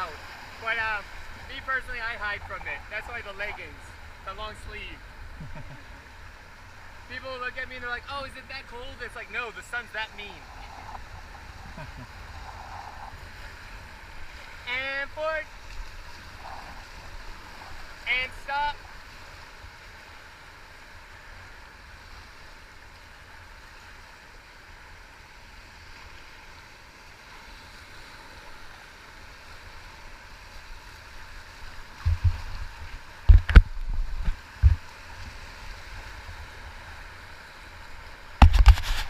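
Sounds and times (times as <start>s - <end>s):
river water rushing: 0.0s - 39.0s.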